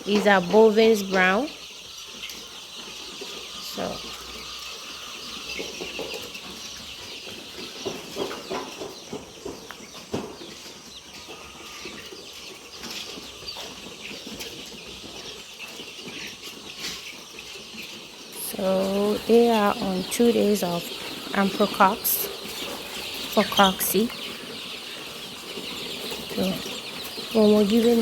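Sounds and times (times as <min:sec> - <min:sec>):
chicks peeping and clucking: 0:00.0 - 0:28.0.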